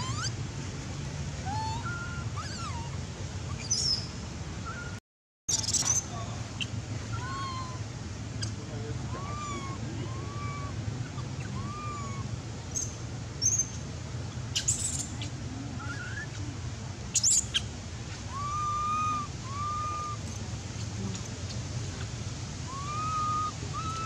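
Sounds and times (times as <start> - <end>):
baby monkey crying: 0.0 - 0.4, 1.4 - 4.0, 7.1 - 12.9, 15.8 - 16.4, 18.2 - 20.4, 22.6 - 24.0.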